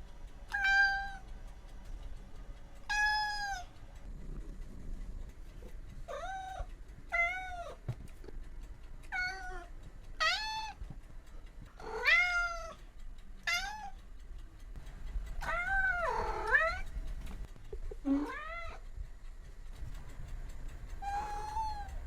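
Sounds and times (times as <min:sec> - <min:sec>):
cat meowing: 0:00.5 - 0:01.2, 0:02.9 - 0:03.7, 0:06.1 - 0:07.8, 0:09.1 - 0:10.8, 0:11.8 - 0:12.8, 0:13.4 - 0:14.0, 0:15.4 - 0:16.9, 0:18.1 - 0:18.8, 0:21.0 - 0:22.0.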